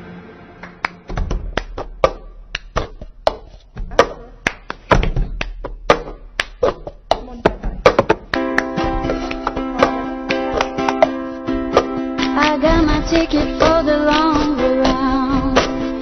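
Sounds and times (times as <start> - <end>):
hand claps: 0.6 - 12.0
ukulele music: 0.6 - 16.0.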